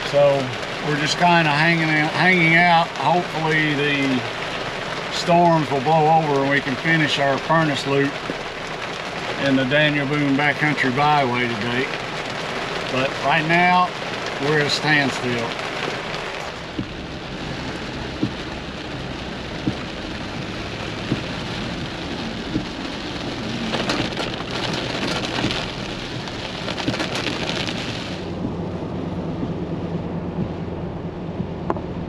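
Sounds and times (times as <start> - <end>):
heavy rain pouring: 0.0 - 32.0
sharp taps: 18.2 - 18.5, 19.6 - 19.9, 21.0 - 21.4.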